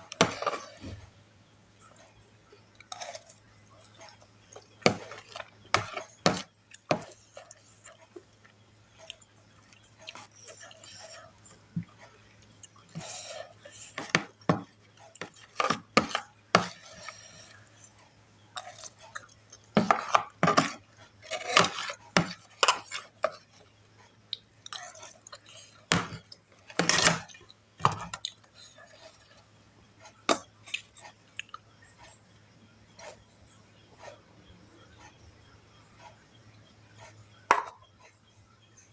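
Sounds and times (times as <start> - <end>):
cutlery scraping a dish: 0.1 - 1.0, 2.9 - 8.1, 12.9 - 17.5, 19.8 - 23.6, 25.9 - 28.2
chewing: 1.8 - 14.0, 14.6 - 29.4, 30.0 - 32.2.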